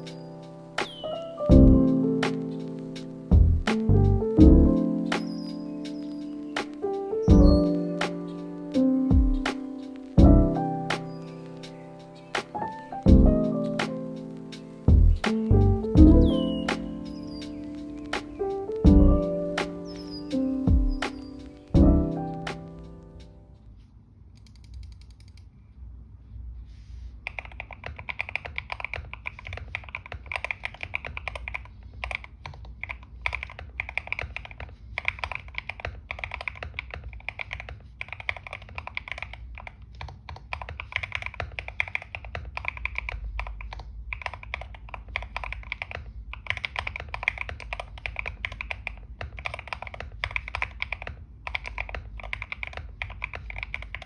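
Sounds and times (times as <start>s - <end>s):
typing on mechanical keyboard: 24.4s - 25.4s, 27.2s - 54.0s.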